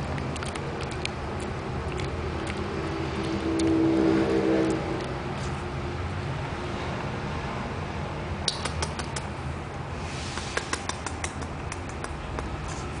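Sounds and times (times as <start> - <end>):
dog crunching carrot: 0.0 - 3.9.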